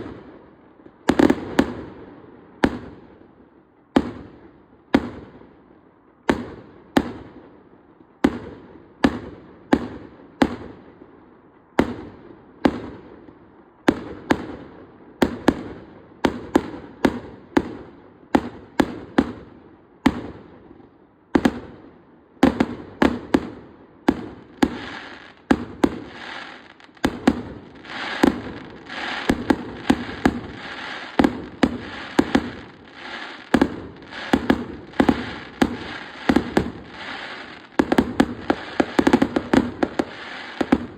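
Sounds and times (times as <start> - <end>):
fireworks bangs: 22.4 - 40.9
fireworks crackle: 24.1 - 40.9.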